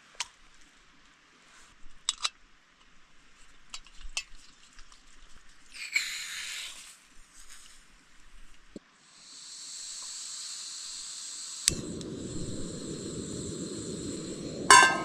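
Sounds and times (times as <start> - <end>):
sizzling hiss: 5.8 - 7.8, 8.8 - 15.0.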